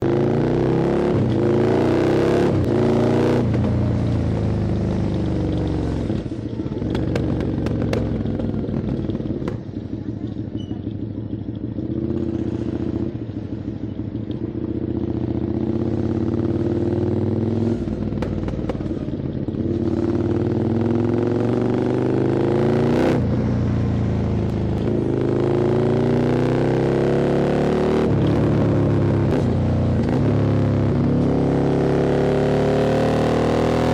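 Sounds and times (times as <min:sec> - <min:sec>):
motorcycle engine revving while riding: 0:00.0 - 0:33.9.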